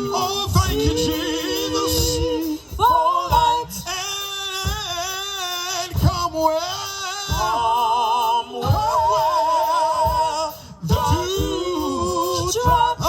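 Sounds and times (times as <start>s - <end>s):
gospel band playing: 0.0s - 13.0s.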